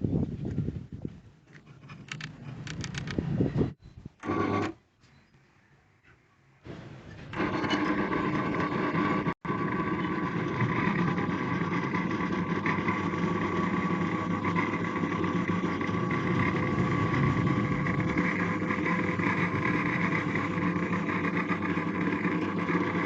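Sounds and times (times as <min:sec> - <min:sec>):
drill press motor humming: 0:04.2 - 0:04.8, 0:07.3 - 0:23.0.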